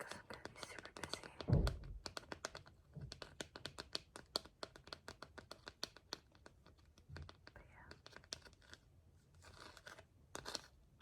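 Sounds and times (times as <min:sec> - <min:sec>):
soft low thump: 0:01.4 - 0:02.0.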